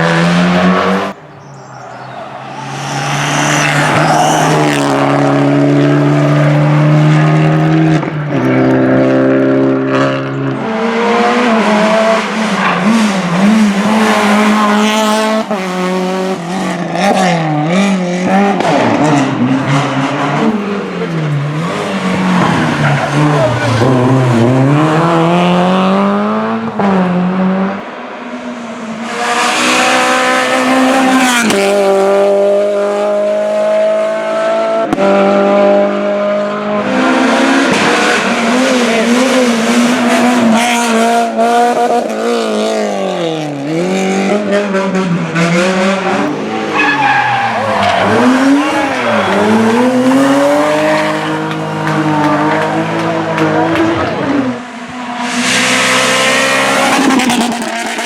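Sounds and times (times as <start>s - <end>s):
rally car engines revving: 0.0s - 58.0s
tyres squealing: 46.7s - 51.2s.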